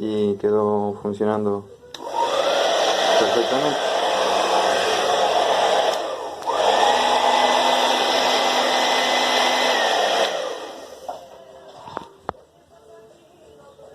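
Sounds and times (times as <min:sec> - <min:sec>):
hair dryer blowing: 0:02.0 - 0:11.4.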